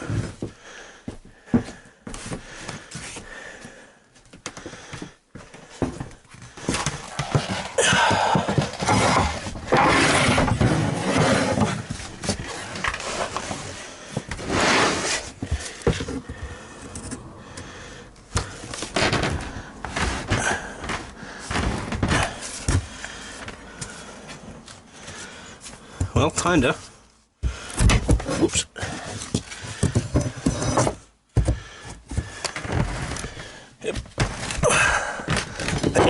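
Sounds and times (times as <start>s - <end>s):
boards scraping: 6.6s - 17.3s, 27.5s - 36.0s
boards thudding and knocking: 7.0s - 12.3s, 27.4s - 28.5s, 33.9s - 36.0s.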